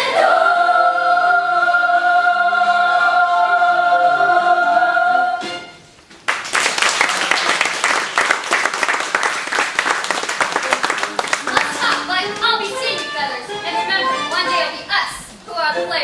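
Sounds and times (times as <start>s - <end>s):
audience applause: 6.3s - 12.6s.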